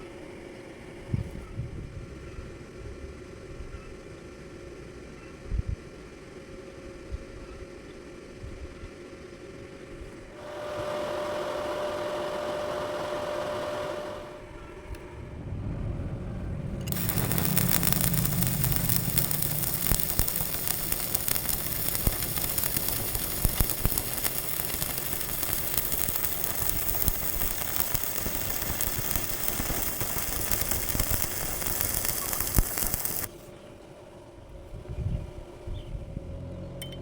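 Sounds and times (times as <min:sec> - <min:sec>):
welding arc crackling: 0:10.4 - 0:14.4, 0:16.8 - 0:33.5.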